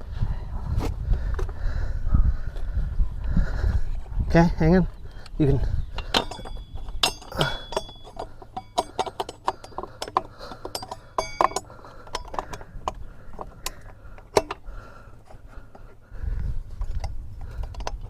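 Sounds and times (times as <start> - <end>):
metal tools clinking: 5.9 - 15.8.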